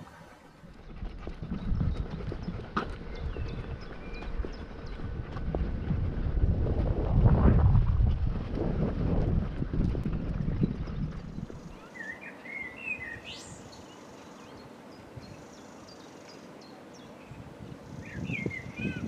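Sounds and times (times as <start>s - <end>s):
low rumble: 0.8s - 11.8s
small songbird chirping: 11.3s - 19.0s.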